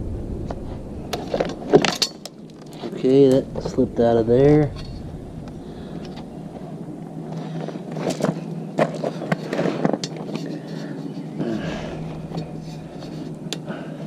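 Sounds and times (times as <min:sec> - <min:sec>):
steady low hum: 0:00.0 - 0:14.0
cable scraping against metal: 0:09.1 - 0:13.7.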